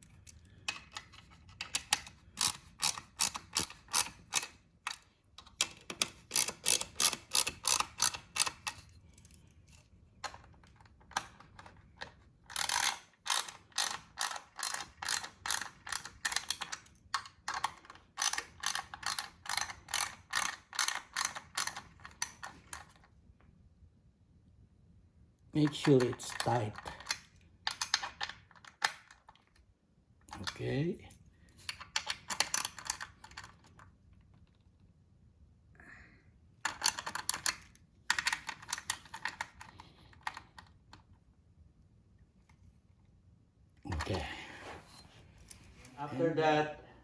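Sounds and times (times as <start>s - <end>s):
tool clicking tightening bolts: 0.2s - 8.8s, 12.5s - 22.9s, 31.7s - 33.6s, 36.7s - 40.4s.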